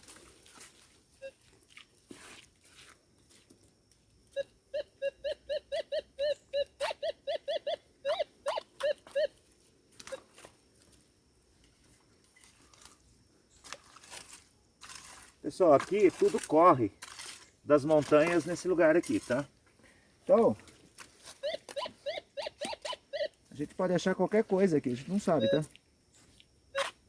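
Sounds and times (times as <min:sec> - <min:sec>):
metal detector beeping: 0:04.3 - 0:09.4, 0:21.2 - 0:23.4, 0:24.8 - 0:25.7.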